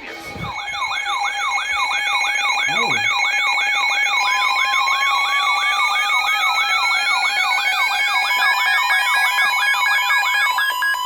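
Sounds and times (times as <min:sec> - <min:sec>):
siren-like sweeping tone: 0:00.0 - 0:05.0
pulsing beep: 0:00.2 - 0:05.5
steady alert tones: 0:02.6 - 0:03.2.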